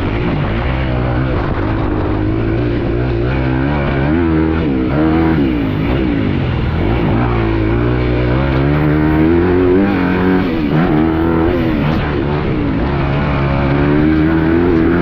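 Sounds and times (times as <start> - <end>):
motocross bike engine revving: 0.0 - 15.0.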